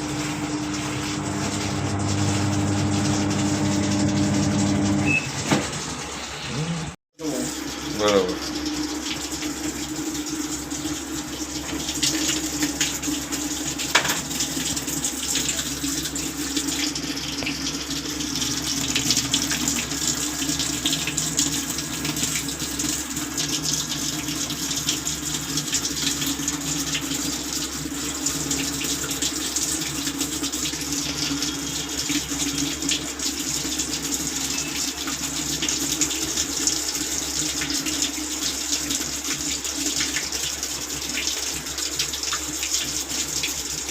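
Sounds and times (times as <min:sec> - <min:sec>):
low hum: 0:00.0 - 0:05.3
water running into washing machine: 0:00.0 - 0:43.9.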